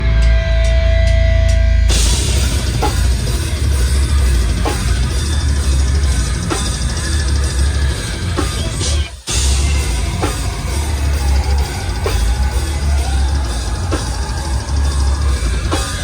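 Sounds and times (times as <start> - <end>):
live heavy band music: 0.0 - 16.0
heavy accented drum hits: 1.9 - 7.2.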